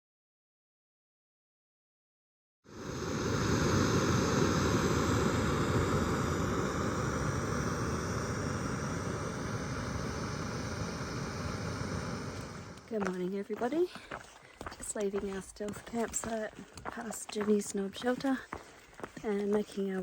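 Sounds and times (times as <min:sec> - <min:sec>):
steady rushing noise: 0:02.7 - 0:13.1.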